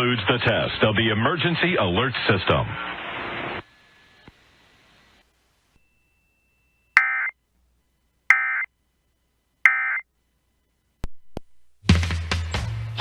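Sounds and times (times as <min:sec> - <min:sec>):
digital data tone bursts: 0:07.0 - 0:07.3, 0:08.3 - 0:08.7, 0:09.7 - 0:10.0
music: 0:11.8 - 0:13.0.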